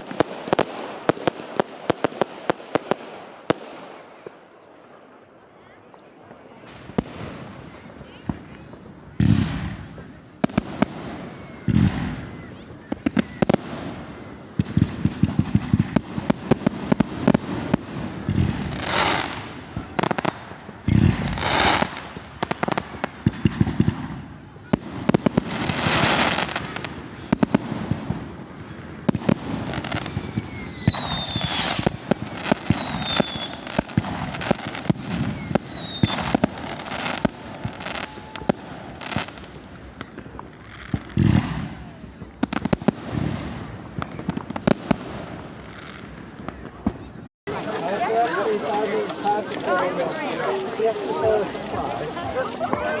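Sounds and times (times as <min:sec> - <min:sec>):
fireworks crackling bangs: 0:00.0 - 0:04.6, 0:05.8 - 0:53.0
fireworks rushing hiss: 0:13.0 - 0:53.0
falling firework whistles: 0:29.7 - 0:39.5.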